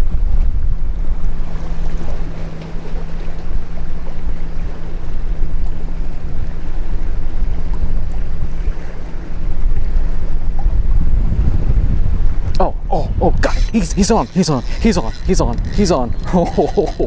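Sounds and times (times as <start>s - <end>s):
wind rumbling on microphone: 0.0s - 2.3s, 6.7s - 17.0s
steady low hum: 12.1s - 17.0s.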